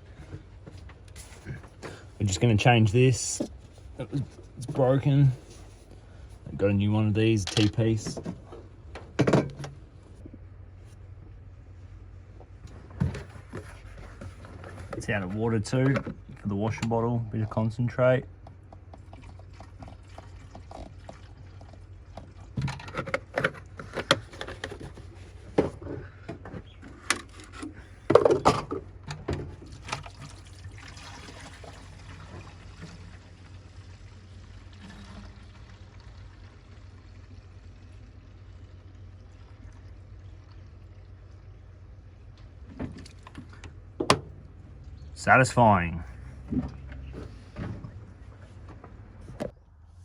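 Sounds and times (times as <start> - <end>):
water pouring into bottle: 29.6 - 37.4.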